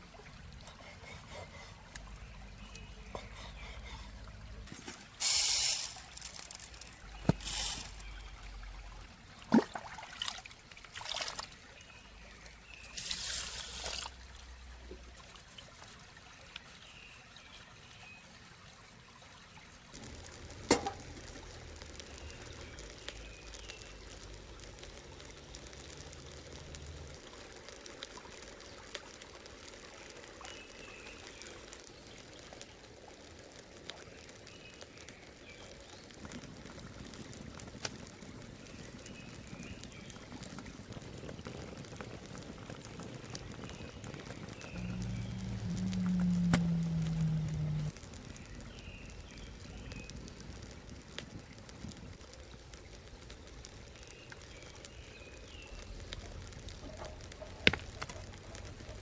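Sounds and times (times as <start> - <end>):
liquid pouring and splashing: 4.2 - 11.7, 12.8 - 16.2.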